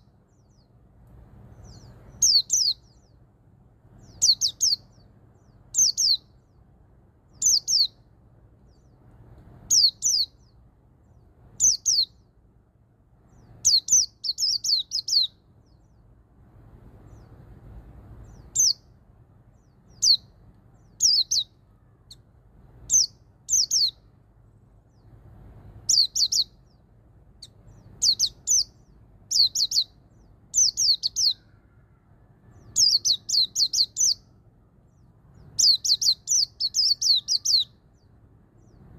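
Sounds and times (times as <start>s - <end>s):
small bird singing: 0.0s - 38.9s.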